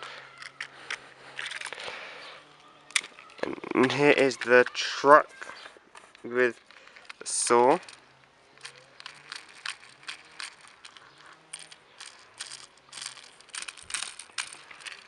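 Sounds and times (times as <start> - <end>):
plastic packaging crinkling: 6.8 - 15.0.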